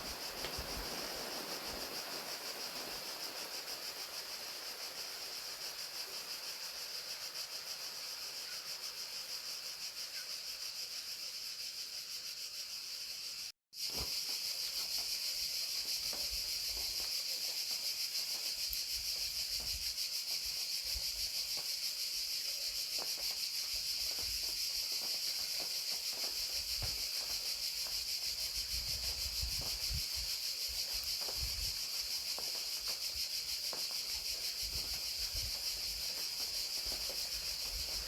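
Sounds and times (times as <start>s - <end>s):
rain pattering: 0.0s - 6.1s, 23.0s - 38.0s
crickets chirping: 0.0s - 38.0s.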